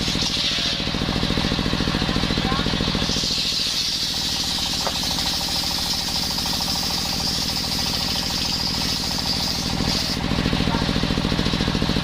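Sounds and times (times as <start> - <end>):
saw mill engine chugging: 0.0 - 12.0
saw blade hissing through wood: 2.9 - 10.5.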